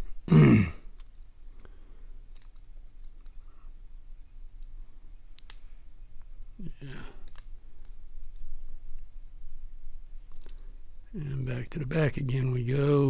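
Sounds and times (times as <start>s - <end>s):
voice murmuring: 6.6s - 7.2s.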